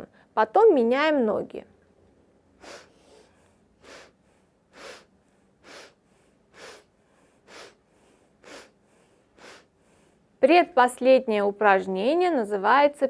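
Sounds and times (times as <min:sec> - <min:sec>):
sharp nasal sniffs: 0:02.6 - 0:10.1.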